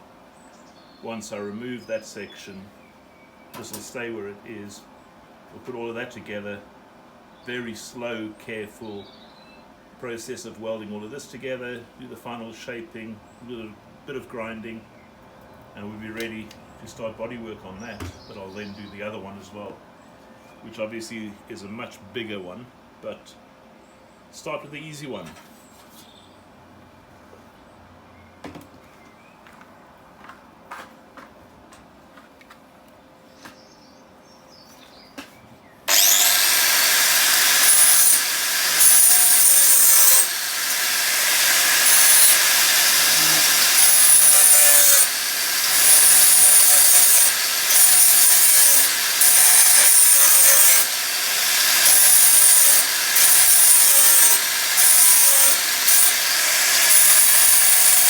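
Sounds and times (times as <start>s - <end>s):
power grinder on steel: 35.9s - 58.0s.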